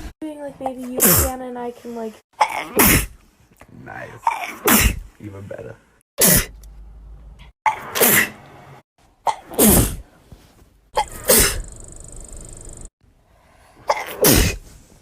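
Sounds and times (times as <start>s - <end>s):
woman sneezing: 2.4s - 3.1s.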